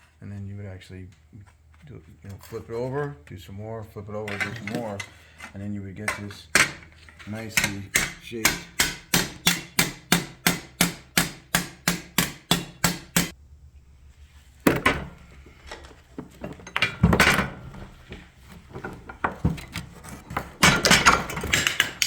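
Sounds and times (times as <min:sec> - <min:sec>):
metal clanking when handled: 0:04.2 - 0:08.2, 0:14.7 - 0:22.0
hammer striking sheet steel: 0:07.6 - 0:13.4.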